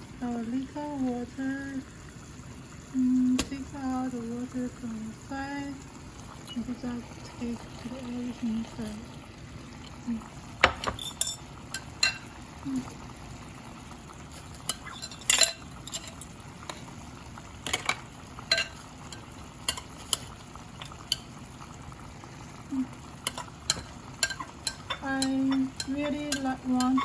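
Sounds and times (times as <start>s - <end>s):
food sizzling: 0.0s - 27.0s
utensil knocking and scraping pot: 17.6s - 21.3s, 23.2s - 27.0s.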